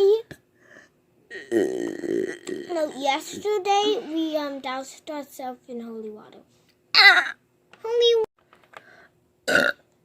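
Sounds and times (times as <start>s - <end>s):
loud burp: 1.3s - 2.9s, 9.4s - 9.8s.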